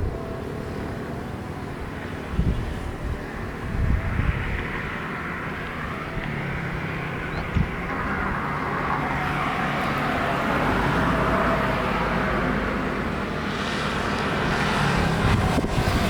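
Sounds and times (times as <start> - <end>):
jet engines rumbling: 0.0 - 16.0.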